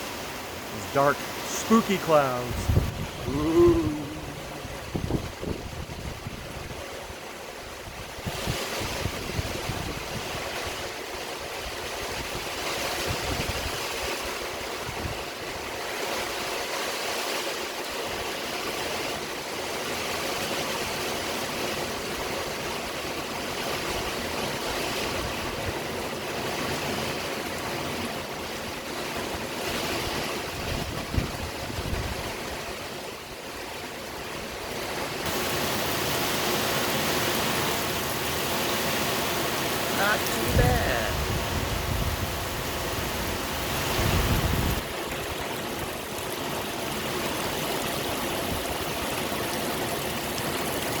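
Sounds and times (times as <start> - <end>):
heavy rain hissing: 0.0 - 5.3, 35.3 - 44.8
wind buffeting microphone: 2.5 - 7.1, 7.7 - 10.9, 30.5 - 32.6, 40.5 - 45.5.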